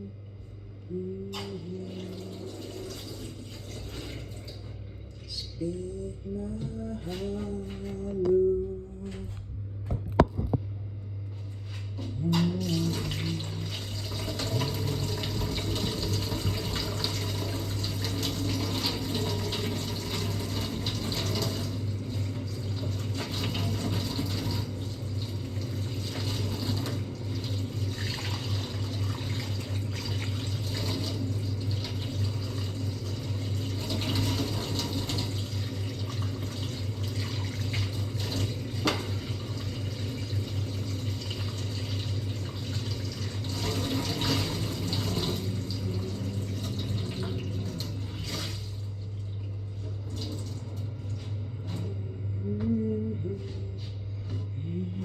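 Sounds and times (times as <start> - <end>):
low hum: 0.0 - 16.8, 44.4 - 55.0
water running: 1.3 - 5.8, 11.7 - 51.9.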